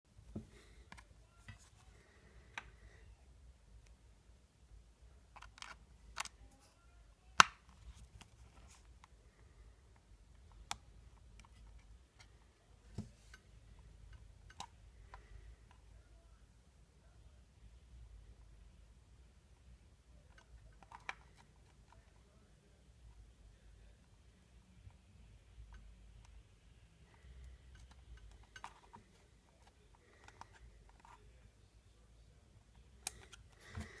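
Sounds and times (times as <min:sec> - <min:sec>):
faint clicks and taps of handling: 0:00.2 - 0:03.0, 0:07.4 - 0:15.9, 0:20.1 - 0:22.4, 0:27.0 - 0:31.5.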